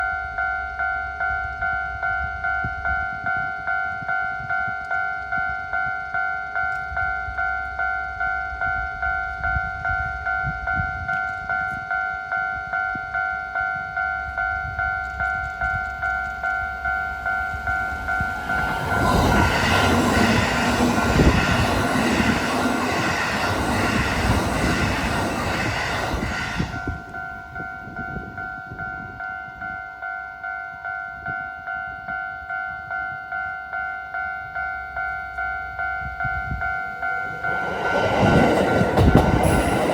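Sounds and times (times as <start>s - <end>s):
level crossing warning bell: 0.2s - 39.9s
electric train passing: 14.0s - 29.2s, 34.8s - 39.9s.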